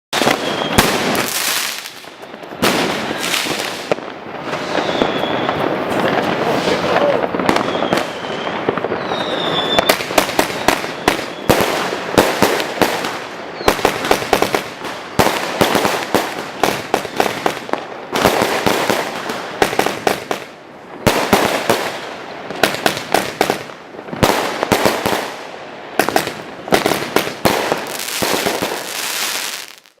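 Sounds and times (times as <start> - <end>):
firework rising whistle: 0.2 - 11.7.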